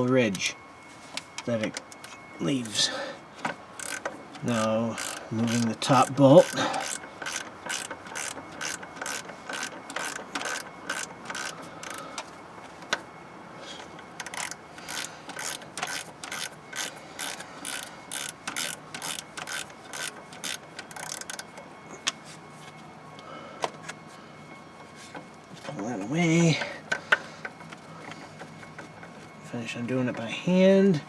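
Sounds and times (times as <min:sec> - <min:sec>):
socket ratchet clicking: 0:03.8 - 0:12.0, 0:14.2 - 0:21.5.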